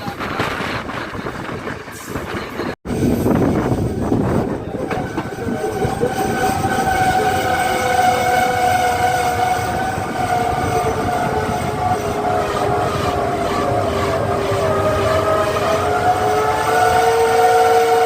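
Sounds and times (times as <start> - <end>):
train rumbling: 0.0 - 18.0
whining tone: 3.6 - 18.0.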